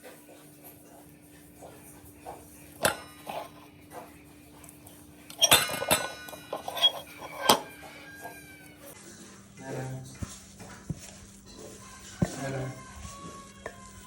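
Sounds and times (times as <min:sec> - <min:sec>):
metal dishes and utensils clinking: 0:00.0 - 0:10.3.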